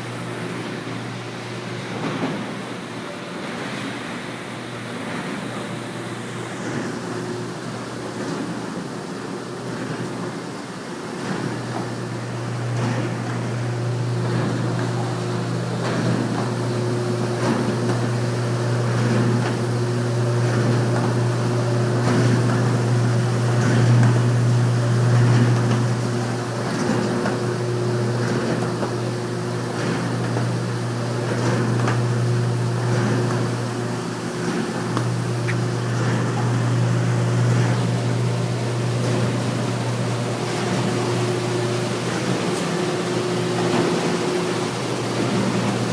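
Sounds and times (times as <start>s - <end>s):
electric motor hum: 11.7s - 45.9s.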